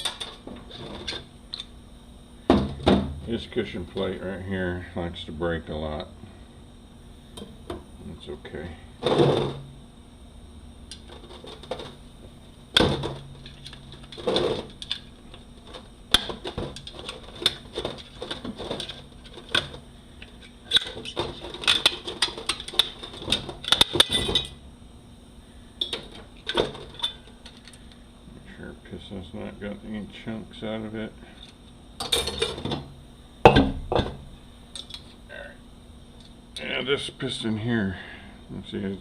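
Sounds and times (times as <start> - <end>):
metal parts clinking on workbench: 20.7 - 24.6, 32.0 - 32.6.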